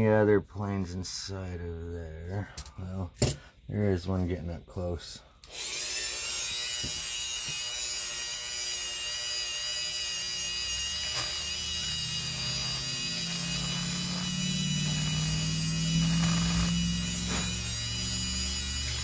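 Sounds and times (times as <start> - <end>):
rotary tool cutting circuit board: 5.5 - 19.0
low hum: 11.5 - 19.0.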